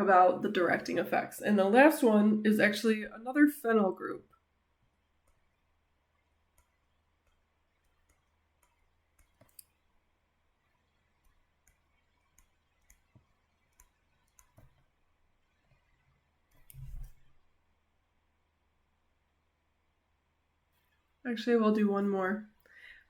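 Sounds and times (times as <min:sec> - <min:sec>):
stylus tapping on tablet: 0:11.6 - 0:14.9.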